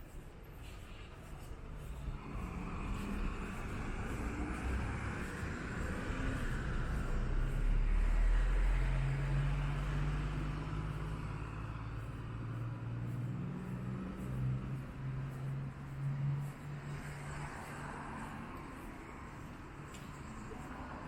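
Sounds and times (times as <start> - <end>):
vehicle engine running: 1.9 - 16.5.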